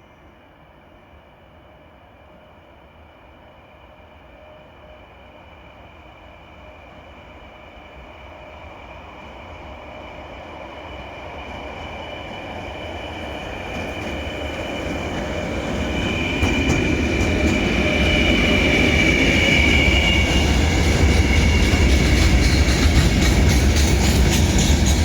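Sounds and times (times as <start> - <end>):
train approaching: 0.0 - 25.0
wheels squealing on rails: 9.4 - 25.0.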